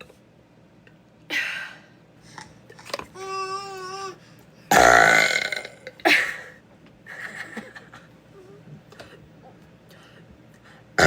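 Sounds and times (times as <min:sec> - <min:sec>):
woman burping: 0:04.7 - 0:06.5.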